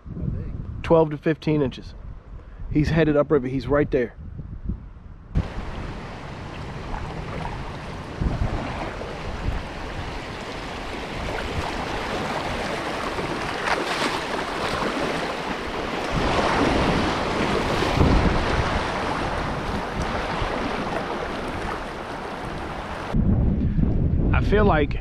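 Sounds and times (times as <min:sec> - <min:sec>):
wind buffeting microphone: 0:00.0 - 0:25.0
rushing river water: 0:05.4 - 0:23.2.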